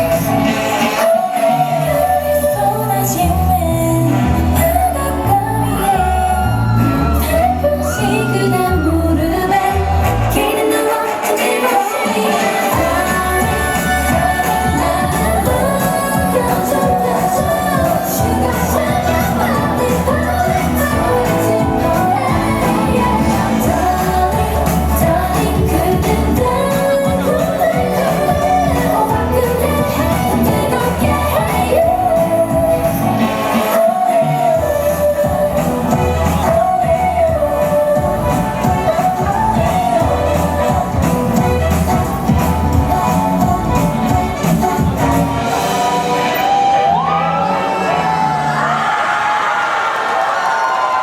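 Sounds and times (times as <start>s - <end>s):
woman singing: 0.0s - 46.2s
pop song over sound system: 0.0s - 51.0s
shouts: 5.8s - 9.0s, 46.2s - 51.0s
heavy bass line: 12.8s - 33.2s.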